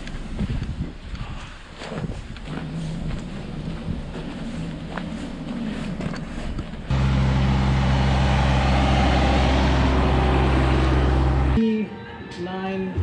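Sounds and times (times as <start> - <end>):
mechanical rushing with deep hum: 2.5 - 11.6
street noise: 2.5 - 11.8.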